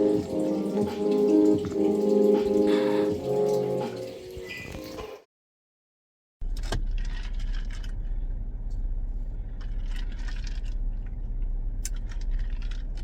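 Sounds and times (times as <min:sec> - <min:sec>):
car cabin rumble: 0:06.4 - 0:13.0.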